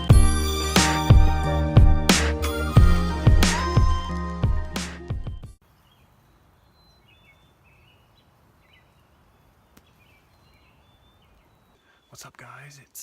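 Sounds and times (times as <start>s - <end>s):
intro music: 0.0s - 5.6s
background hiss: 5.6s - 13.0s
bird chirps and calls: 5.8s - 12.7s.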